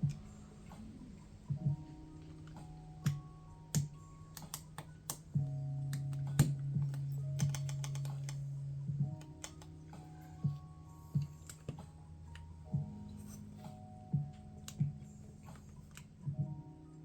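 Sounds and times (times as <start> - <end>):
soft background music: 0.0 - 17.0
plastic keycaps clicking onto keyboard: 2.3 - 8.5, 9.1 - 10.1.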